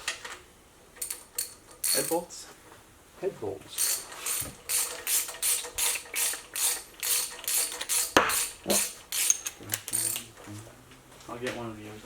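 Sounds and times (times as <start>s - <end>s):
socket ratchet clicking: 1.0s - 2.2s, 3.8s - 10.3s
sharp metallic knock: 8.2s - 8.5s.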